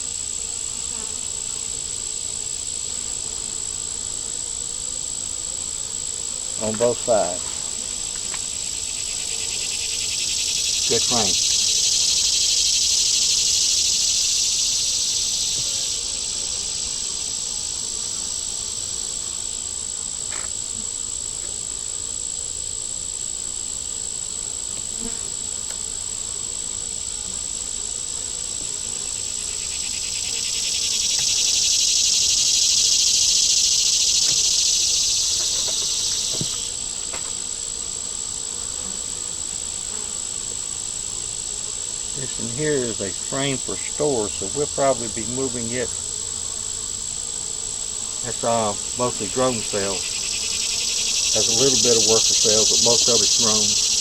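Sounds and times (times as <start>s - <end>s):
insects droning: 0.0s - 54.0s
constant thin whine: 9.8s - 12.2s, 48.2s - 53.9s
faint ticks: 25.6s - 25.8s.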